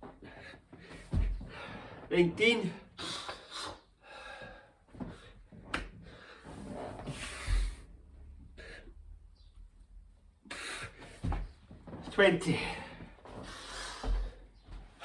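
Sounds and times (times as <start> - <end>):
man breathing heavily: 0.0 - 2.1, 2.8 - 9.2, 10.4 - 11.5, 12.4 - 15.0
body thud on floor: 1.0 - 1.5.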